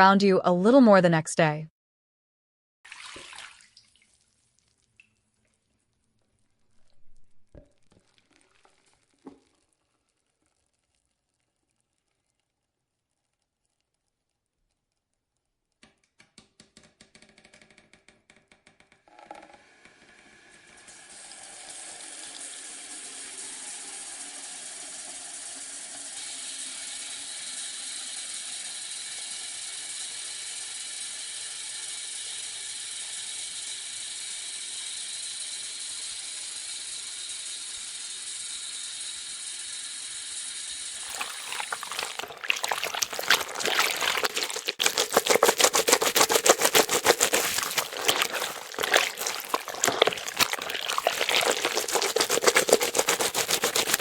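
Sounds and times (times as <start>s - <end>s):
water splashing into basin: 2.9s - 4.1s, 41.0s - 54.0s
faucet running into sink: 41.0s - 43.9s.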